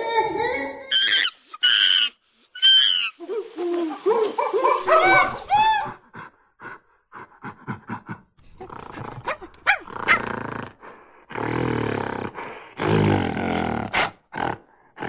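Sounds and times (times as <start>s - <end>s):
monkey grunting and calling: 0.0s - 6.0s.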